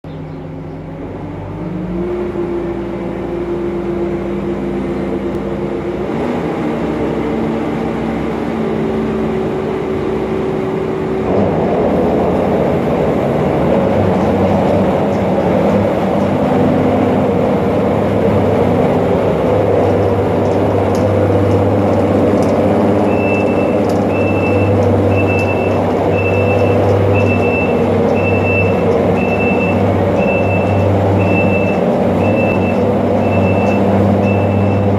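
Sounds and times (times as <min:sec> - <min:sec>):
diesel engine revving: 0:00.0 - 0:34.9
reversing alarm beeping: 0:23.0 - 0:34.9.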